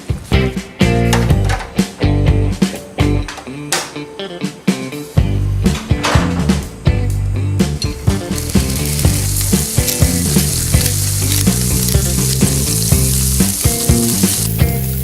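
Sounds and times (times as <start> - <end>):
background music: 0.0 - 15.0
food sizzling in a pan: 7.9 - 15.0.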